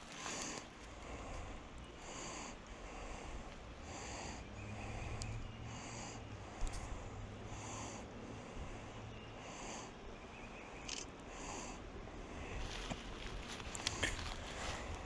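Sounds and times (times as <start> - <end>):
person breathing through nose: 0.0 - 10.0.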